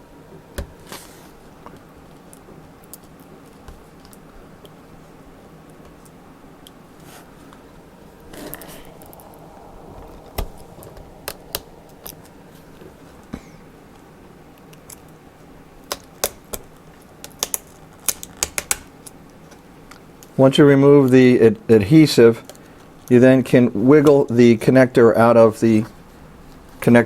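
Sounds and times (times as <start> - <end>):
adhesive tape peeling: 15.8 - 19.2.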